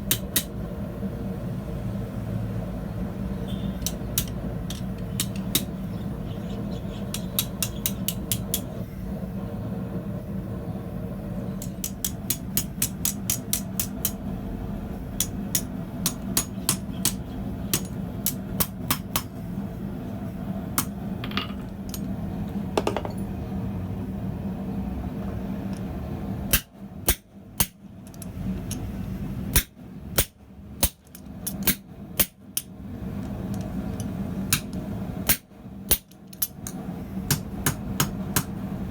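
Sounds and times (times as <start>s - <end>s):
steady low hum: 0.0s - 38.9s
hammer striking steel on anvil: 7.1s - 8.7s, 11.6s - 14.2s, 15.2s - 19.3s, 29.5s - 32.7s.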